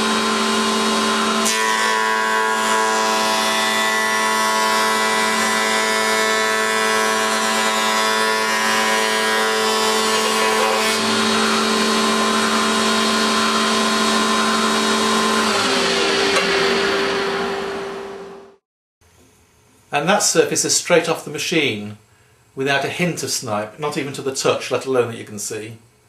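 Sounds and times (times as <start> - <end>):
electric planer cutting a board: 0.0 - 18.5.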